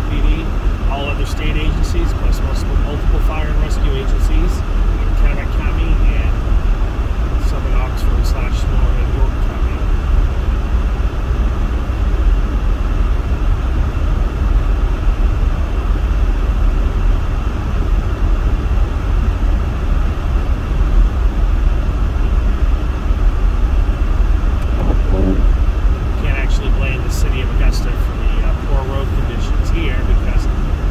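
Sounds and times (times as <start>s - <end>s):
van engine and road noise: 0.0s - 30.9s.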